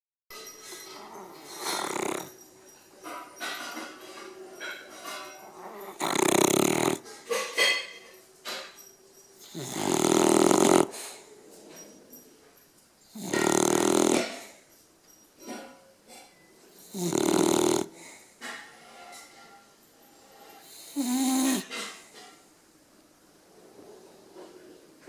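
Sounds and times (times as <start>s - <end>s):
dog snoring: 0.4s - 7.3s, 9.4s - 12.2s, 13.0s - 14.7s, 16.2s - 18.2s, 20.2s - 22.0s.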